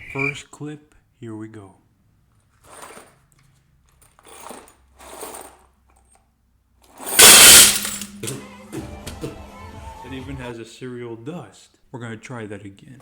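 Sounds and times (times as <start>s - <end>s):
nails clattering into a bucket: 2.6s - 5.7s, 7.0s - 8.5s.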